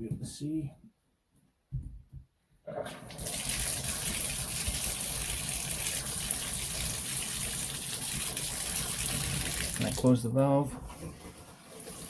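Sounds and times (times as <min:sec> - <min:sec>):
water gushing from tub spout: 0:02.7 - 0:12.0
faucet turned on: 0:03.0 - 0:10.1.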